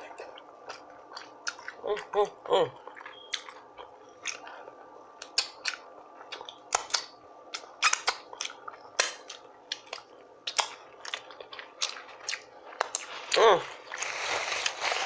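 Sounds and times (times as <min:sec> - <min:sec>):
chewing food: 0:00.1 - 0:04.5, 0:05.2 - 0:15.0
wet mouth clicks and smacks: 0:05.2 - 0:13.0.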